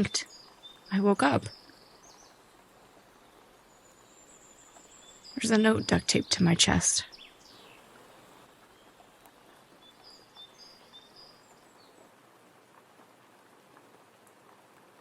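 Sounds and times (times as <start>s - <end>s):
steady low outdoor hiss: 0.0s - 15.0s.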